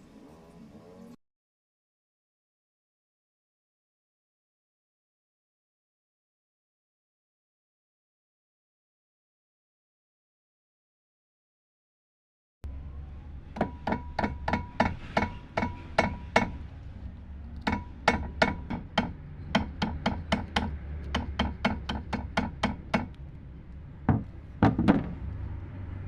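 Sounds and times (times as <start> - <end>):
hammer tapping: 13.6 - 16.6, 17.6 - 23.2, 24.1 - 25.1
hard hammer knocks: 13.6 - 16.6, 17.6 - 23.2, 24.1 - 25.2.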